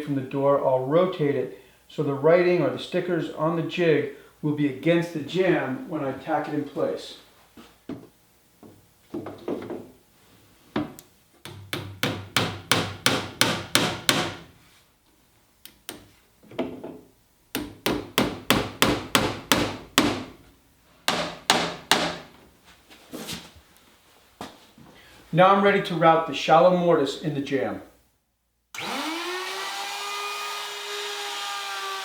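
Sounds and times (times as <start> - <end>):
hammer tapping nails into wood: 11.5 - 14.4, 17.6 - 20.2, 21.1 - 22.2.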